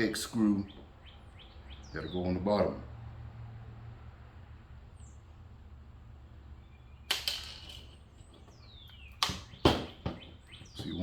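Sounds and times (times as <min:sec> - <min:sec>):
small hard parts clacking: 0:07.1 - 0:08.0.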